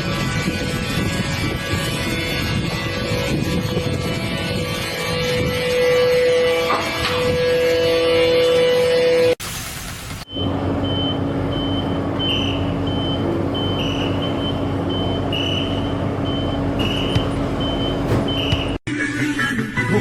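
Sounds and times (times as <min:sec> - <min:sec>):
heavy vehicle engine running: 0:10.3 - 0:18.8
reversing alarm beeping: 0:10.3 - 0:18.8.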